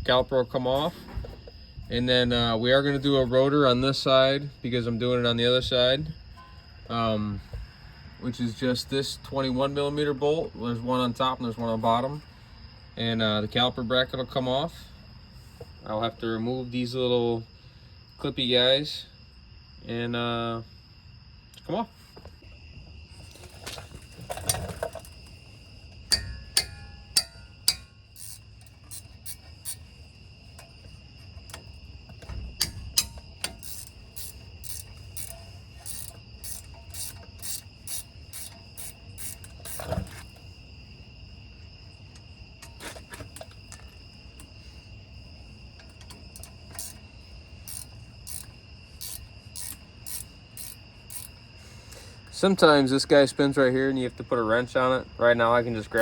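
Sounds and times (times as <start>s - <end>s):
crickets chirping: 0.0s - 56.0s
metal tools clicking and clanking: 23.3s - 40.5s, 45.7s - 51.4s.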